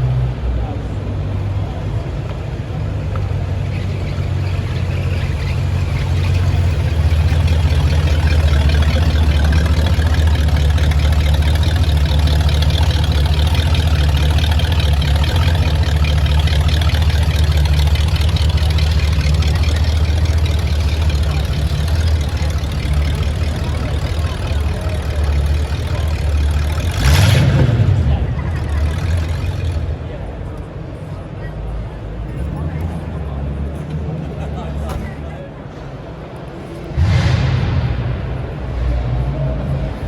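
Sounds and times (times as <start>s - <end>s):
engine idling: 0.0s - 31.3s.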